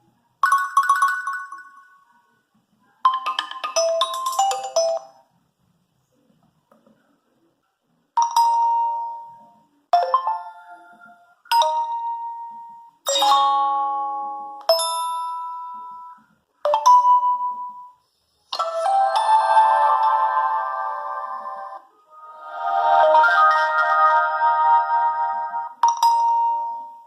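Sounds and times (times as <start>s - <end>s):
longer phone ringtone melody: 0.4s - 2.0s, 3.1s - 5.2s, 10.0s - 18.0s, 18.6s - 27.0s
chime-like phone ringtones: 0.4s - 2.1s, 3.1s - 5.2s, 10.0s - 18.0s, 18.6s - 21.8s, 22.4s - 27.0s.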